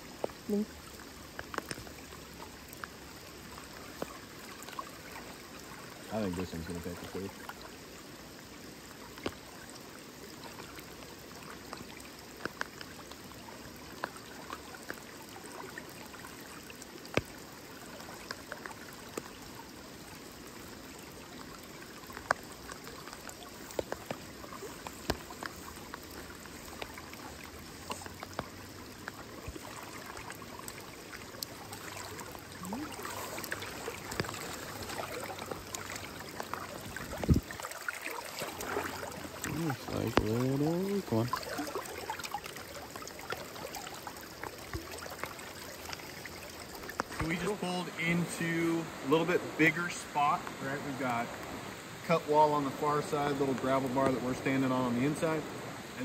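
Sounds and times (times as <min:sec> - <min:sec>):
river rushing: 0:21.7 - 0:56.0.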